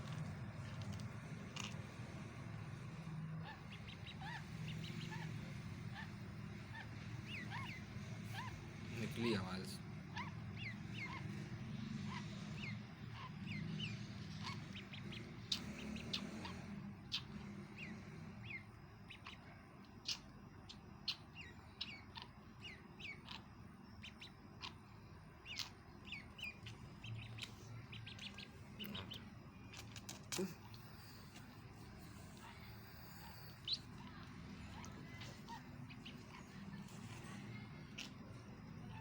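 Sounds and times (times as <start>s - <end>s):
duckling peeping: 2.8s - 39.0s.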